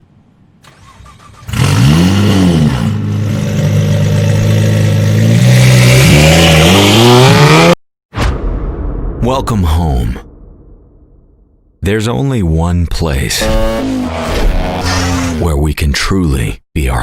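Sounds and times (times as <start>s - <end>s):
motorcycle engine revving: 1.4s - 7.8s, 13.4s - 15.4s.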